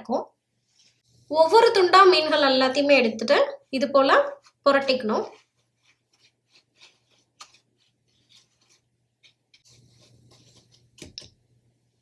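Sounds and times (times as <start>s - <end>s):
fish rolled in bread crumbs: 4.4s - 11.2s.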